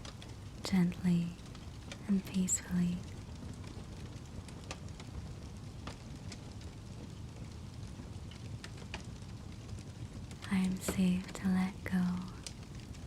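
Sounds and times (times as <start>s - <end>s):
low rumble of flames: 0.0s - 13.0s
wood fire crackling: 0.0s - 13.0s
sharp pops and snaps: 3.0s - 11.4s.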